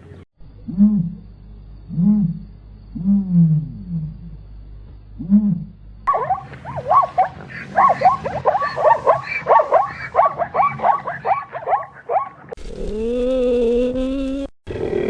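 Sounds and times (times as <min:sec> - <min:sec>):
animal drawn-out call: 0:05.2 - 0:13.1
animal short rapid calls: 0:06.1 - 0:12.6.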